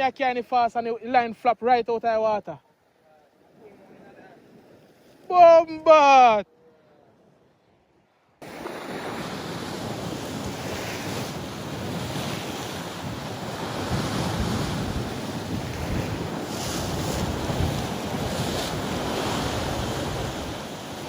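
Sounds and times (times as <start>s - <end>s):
sea waves washing: 2.8s - 21.0s
wind buffeting microphone: 8.4s - 21.0s.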